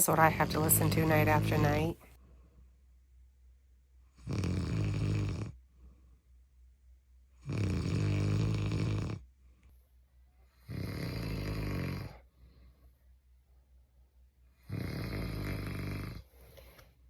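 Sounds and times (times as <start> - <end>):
man snoring: 0.0 - 2.0, 4.2 - 5.6, 7.4 - 9.3, 10.5 - 12.3, 14.6 - 16.3.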